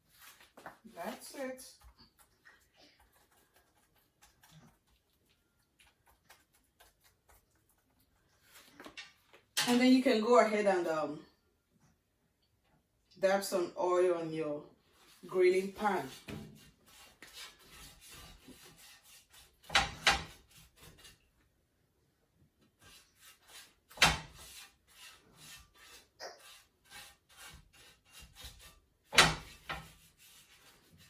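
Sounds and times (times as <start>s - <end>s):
rubbing and scraping on grill pan: 0.0s - 9.2s, 14.8s - 21.4s, 22.8s - 31.0s.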